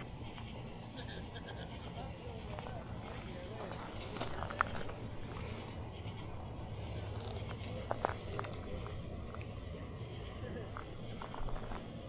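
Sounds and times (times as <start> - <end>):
crickets chirring: 0.0 - 12.0
low steady hum: 0.0 - 12.0
faint clicks: 3.0 - 9.6.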